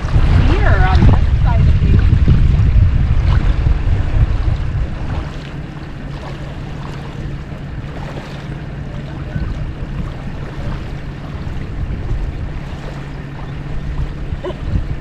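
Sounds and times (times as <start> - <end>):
constant low hum: 0.0 - 15.0
small waves lapping at shore: 0.0 - 15.0
wind: 0.0 - 15.0
faint splashes: 3.1 - 15.0.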